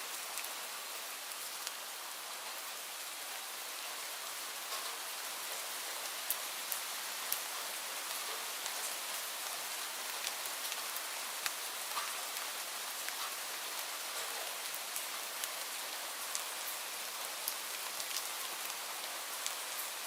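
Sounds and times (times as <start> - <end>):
light rain falling: 0.0 - 20.0
raindrops ticking: 4.7 - 15.7.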